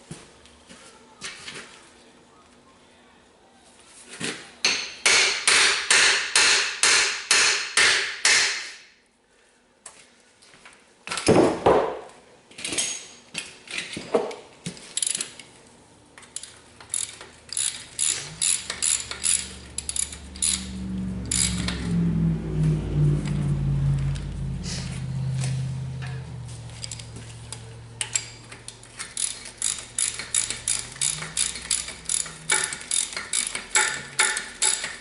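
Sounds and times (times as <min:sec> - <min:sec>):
low steady hum: 0:15.7 - 0:34.7
metal-on-metal clicks: 0:16.2 - 0:21.8, 0:26.8 - 0:35.0.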